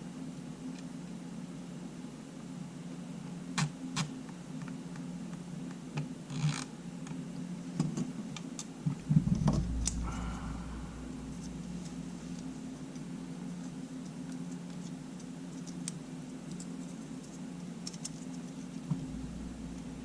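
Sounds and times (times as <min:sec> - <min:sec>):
steady low hum: 0:08.9 - 0:20.0
loud knocks: 0:09.1 - 0:11.8.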